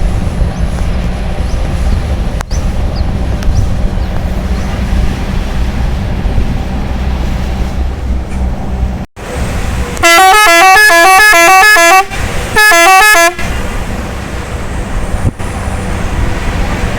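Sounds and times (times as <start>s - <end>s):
bus engine droning: 0.0s - 16.9s
road noise: 0.0s - 16.9s.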